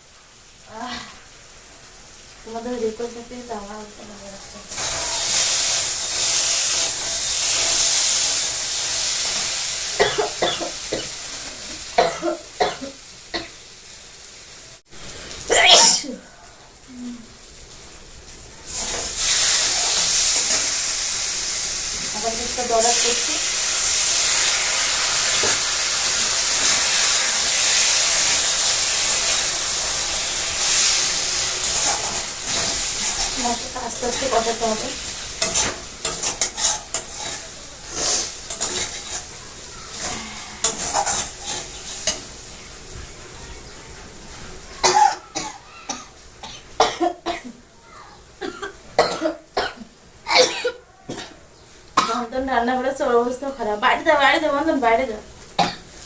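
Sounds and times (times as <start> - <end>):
food sizzling in hot oil: 0.0 - 56.0
person coughing: 10.0 - 11.1, 12.0 - 13.5, 15.5 - 16.3, 48.4 - 51.4.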